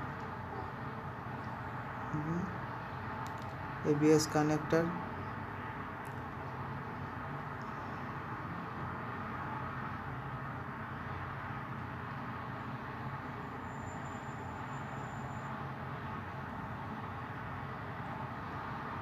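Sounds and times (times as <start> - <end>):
steady background noise: 0.0 - 19.0
faint high-pitched tone: 13.4 - 15.6.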